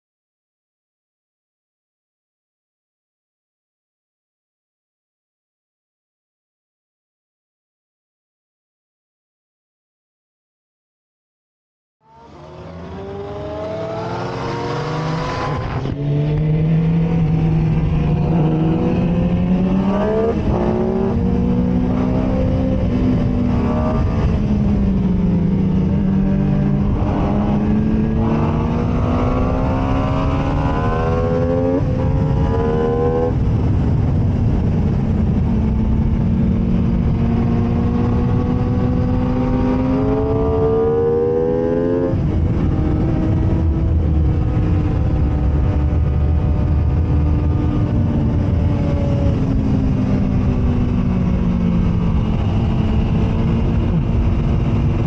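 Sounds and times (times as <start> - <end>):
motorcycle engine revving: 12.0 - 55.0.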